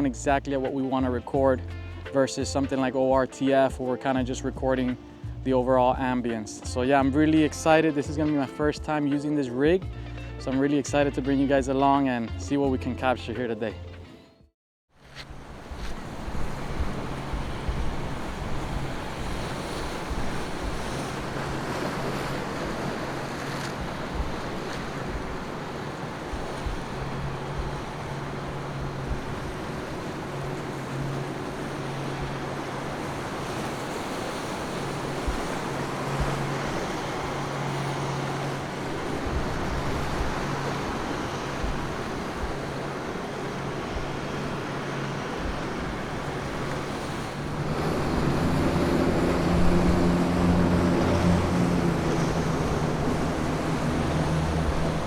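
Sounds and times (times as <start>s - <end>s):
water washing through inlet: 0.0s - 9.8s, 15.0s - 55.0s
ocean waves breaking: 0.0s - 13.6s, 15.0s - 55.0s
wind rumble on microphone: 15.0s - 55.0s.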